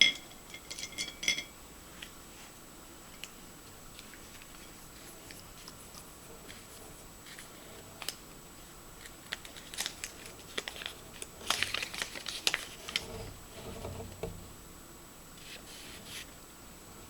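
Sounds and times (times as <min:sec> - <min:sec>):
plastic wrapping crinkling: 0:03.9 - 0:14.2
soft low rubbing: 0:12.6 - 0:14.7.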